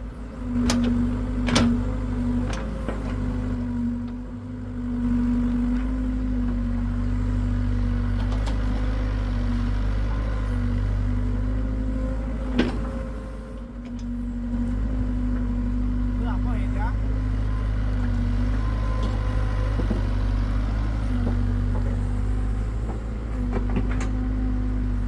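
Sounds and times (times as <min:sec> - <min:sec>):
excavator diesel engine running: 0:00.0 - 0:25.0.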